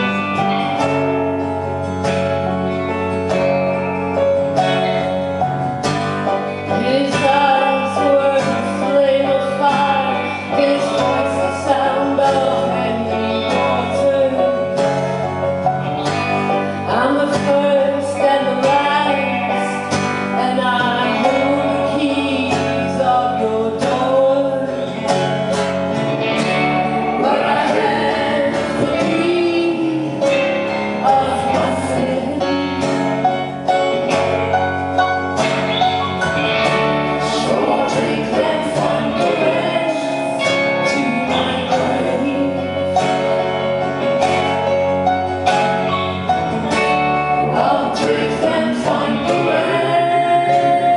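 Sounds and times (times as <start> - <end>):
guitar: 0.0 - 50.9
person singing: 6.2 - 15.5, 16.1 - 34.0, 37.0 - 44.8, 46.8 - 50.9.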